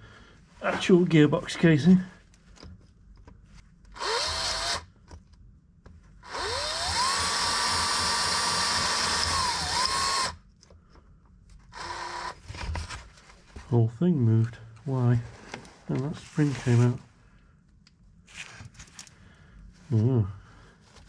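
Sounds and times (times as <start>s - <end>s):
electric drill drilling metal: 4.0s - 4.9s, 6.2s - 10.4s, 11.7s - 12.4s.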